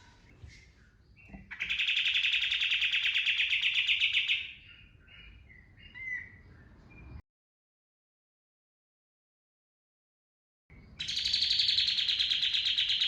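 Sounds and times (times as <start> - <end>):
songbird chirping and trilling: 0.0 - 7.2, 10.7 - 13.0.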